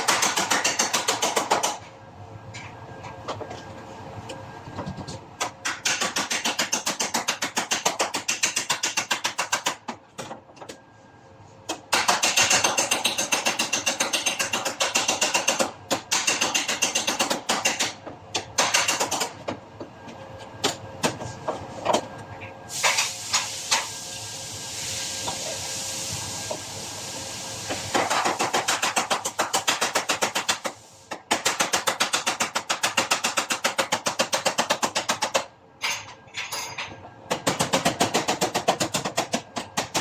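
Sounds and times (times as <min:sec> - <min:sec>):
steady hiss: 0:22.7 - 0:28.0.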